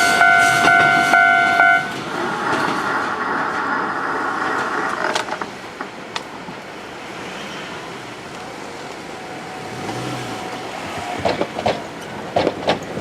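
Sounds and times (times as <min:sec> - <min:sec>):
loud high-pitched sound: 0:00.0 - 0:02.0
electric train running noise: 0:00.0 - 0:13.0
wheel clicks over rail joints: 0:01.9 - 0:06.3, 0:11.0 - 0:13.0.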